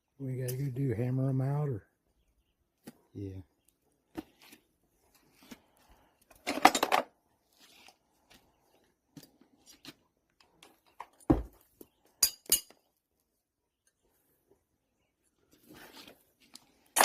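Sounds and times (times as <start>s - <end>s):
steel tools clinking and rattling: 6.4s - 7.1s, 12.2s - 12.8s.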